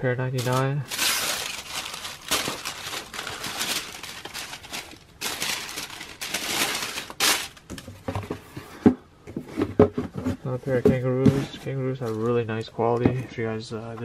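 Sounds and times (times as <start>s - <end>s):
sneaker packaging rustling: 0.3s - 8.6s.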